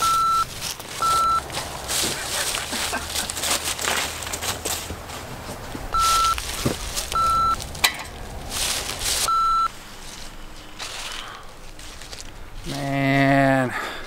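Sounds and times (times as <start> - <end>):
short electronic warning beeps: 0.0 - 1.4, 5.9 - 6.4, 7.2 - 7.6, 9.3 - 9.7.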